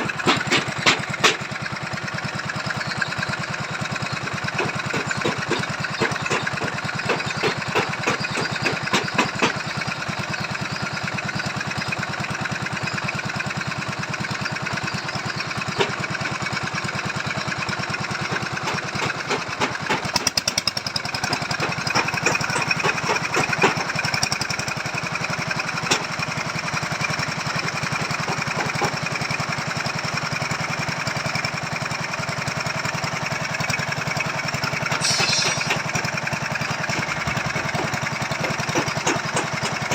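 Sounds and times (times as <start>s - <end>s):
earth auger engine running: 0.0s - 39.9s
sharp knocks: 4.6s - 9.6s, 34.9s - 36.2s, 36.9s - 39.9s.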